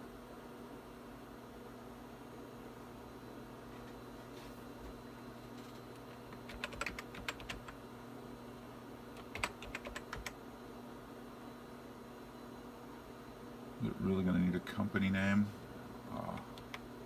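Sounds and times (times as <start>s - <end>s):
low electrical hum: 0.0s - 17.0s
computer keyboard keystrokes: 6.0s - 7.8s, 9.2s - 10.4s.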